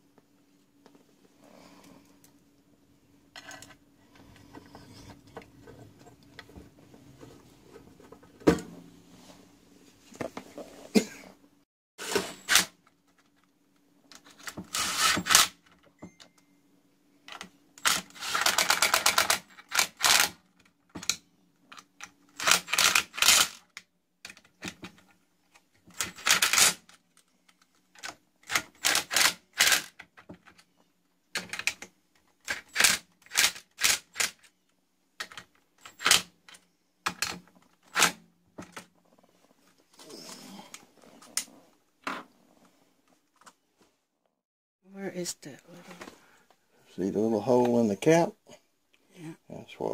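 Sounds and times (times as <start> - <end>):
faint steady hum: 0.0 - 44.1.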